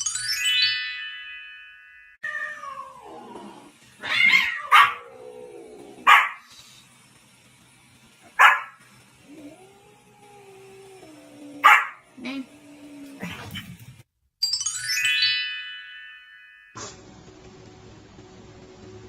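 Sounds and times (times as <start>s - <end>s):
dog barking: 4.7s - 5.0s, 6.0s - 6.5s, 8.4s - 8.8s, 11.6s - 12.0s.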